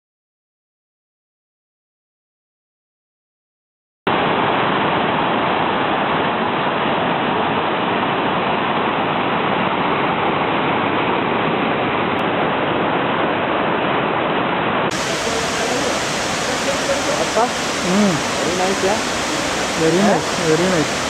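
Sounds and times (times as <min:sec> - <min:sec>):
waterfall rushing: 0:04.1 - 0:21.0.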